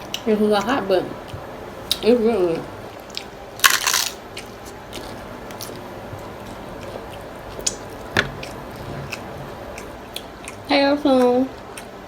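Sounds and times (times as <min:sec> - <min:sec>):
chewing with mouth clicks: 0:02.9 - 0:12.0
crunchy bite into taco shell: 0:03.1 - 0:05.8.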